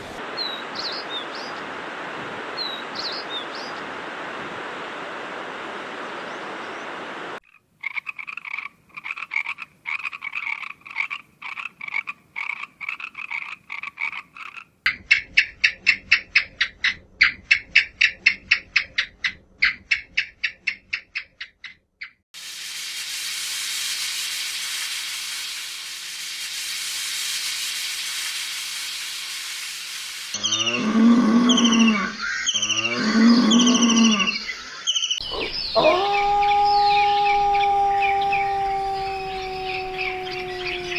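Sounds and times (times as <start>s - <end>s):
steady hiss: 0.0s - 7.4s, 22.4s - 31.1s
pulsed croaking calls: 30.3s - 40.9s
low drawn-out animal calls: 30.4s - 34.6s, 35.2s - 40.9s.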